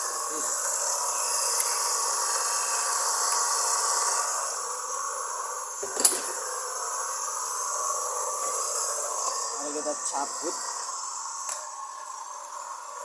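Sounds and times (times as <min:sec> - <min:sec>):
electric grater whining: 0:00.0 - 0:13.0
sharp click: 0:05.9 - 0:06.4.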